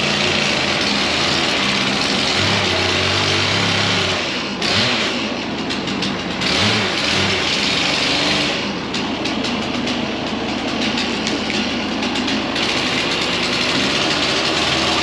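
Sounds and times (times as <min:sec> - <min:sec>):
band sawmill cutting log: 0:00.0 - 0:15.0
low motor hum: 0:05.6 - 0:15.0.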